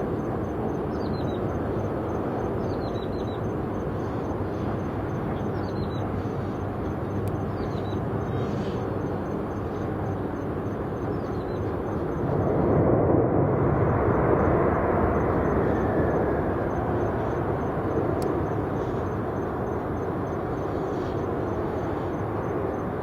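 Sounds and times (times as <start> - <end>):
jet airliner engine rumble: 0.0 - 23.0
faint falling engine whine: 4.8 - 23.0.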